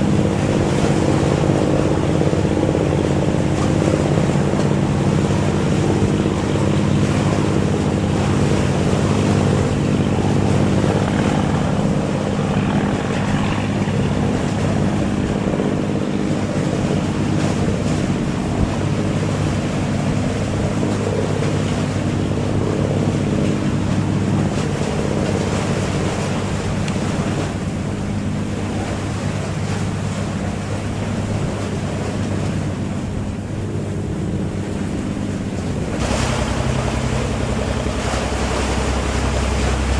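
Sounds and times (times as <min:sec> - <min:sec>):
wind noise: 0:00.0 - 0:19.6
boat engine running: 0:00.0 - 0:39.9
water wash: 0:00.0 - 0:39.9.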